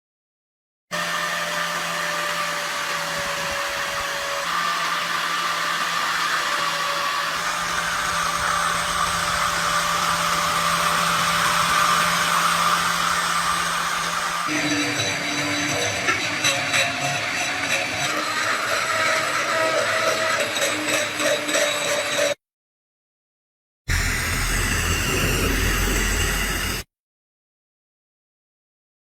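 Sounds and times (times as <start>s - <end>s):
electric blower whirring and humming: 0.9s - 15.6s, 23.9s - 26.8s.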